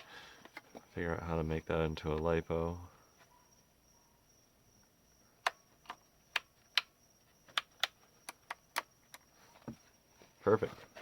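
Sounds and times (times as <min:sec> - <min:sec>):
small parts clicking and tapping: 0:05.4 - 0:09.3.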